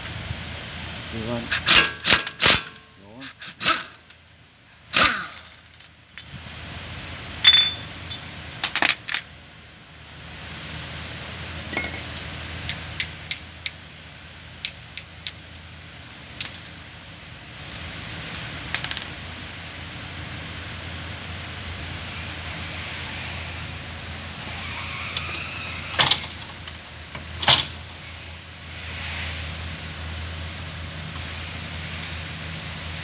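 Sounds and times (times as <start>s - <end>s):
metal clank: 7.4s - 9.2s, 11.7s - 12.2s
metal tools clinking: 7.4s - 9.2s, 11.7s - 12.2s, 16.4s - 16.9s.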